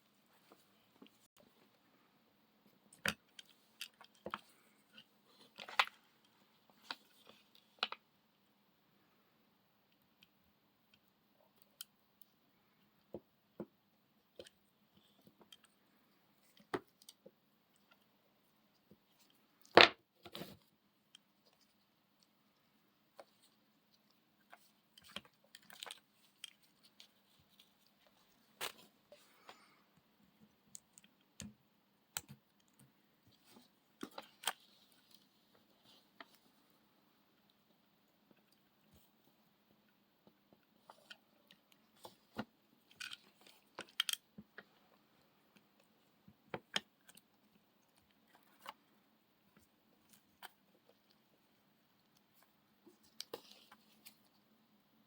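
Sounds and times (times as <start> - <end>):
small parts clicking and crinkling: 2.9 - 8.1, 14.3 - 18.1, 23.1 - 29.6, 40.6 - 54.4.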